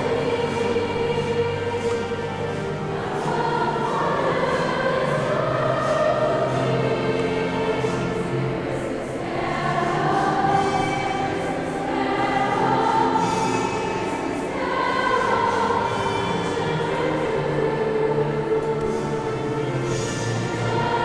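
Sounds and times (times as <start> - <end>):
choir singing long chords: 0.0 - 21.0.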